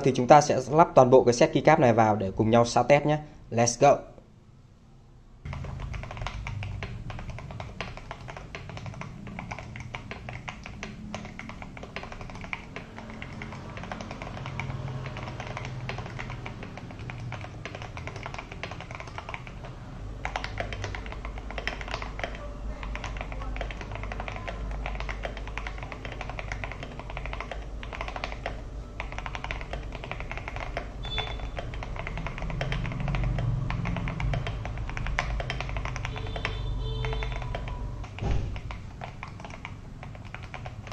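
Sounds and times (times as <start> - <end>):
mechanical keyboard typing: 5.5 - 40.9.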